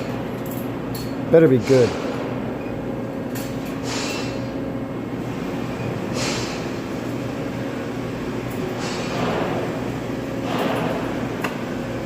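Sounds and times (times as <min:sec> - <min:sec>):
vending machine motor hum: 0:00.0 - 0:12.0
machine hissing: 0:03.8 - 0:04.6, 0:05.2 - 0:07.1, 0:08.6 - 0:09.6.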